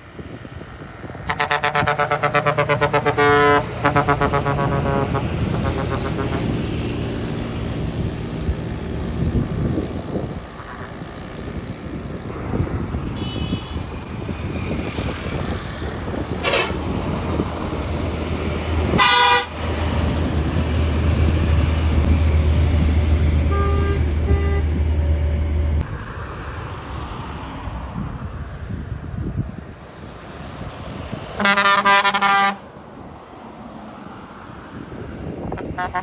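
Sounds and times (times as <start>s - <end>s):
low engine hum: 0.0s - 31.4s
traffic noise: 0.0s - 36.0s
bus air horn: 1.2s - 6.7s, 13.1s - 13.9s, 16.4s - 16.8s, 18.9s - 19.6s, 23.5s - 24.8s, 31.4s - 32.7s, 35.5s - 36.0s.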